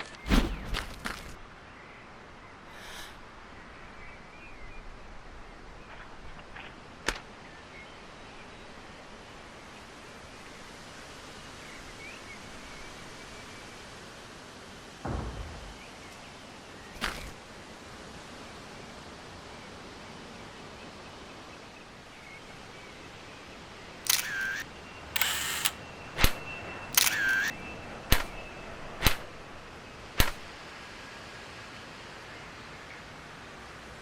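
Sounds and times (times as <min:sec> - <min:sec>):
short thump: 0:00.2 - 0:01.1, 0:15.1 - 0:16.3.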